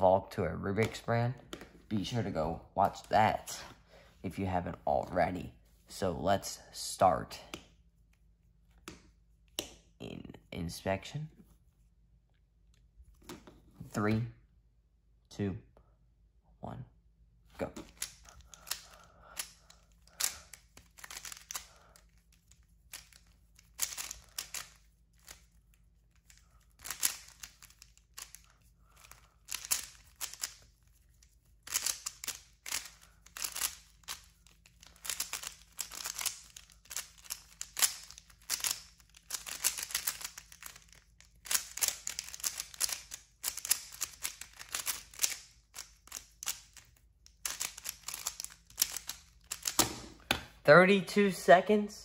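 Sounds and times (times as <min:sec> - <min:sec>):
plastic puzzle cube turning clicks: 0:31.7 - 0:49.8.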